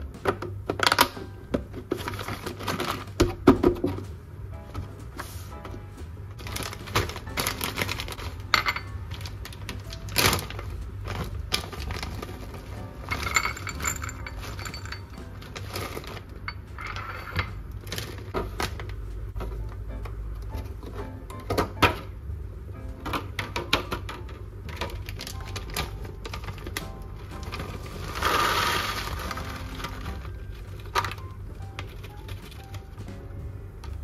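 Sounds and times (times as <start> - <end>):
soft background music: 0.0 - 34.0
small objects clicking and clinking: 11.3 - 17.5.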